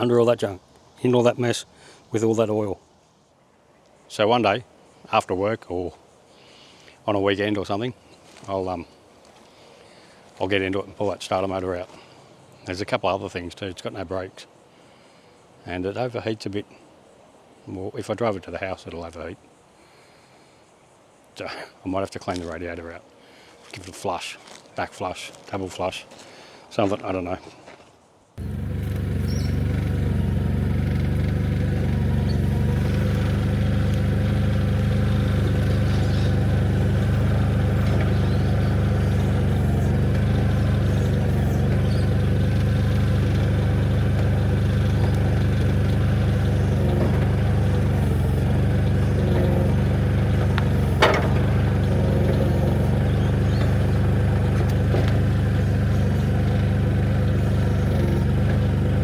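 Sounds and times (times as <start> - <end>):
machine engine running: 28.4 - 59.0.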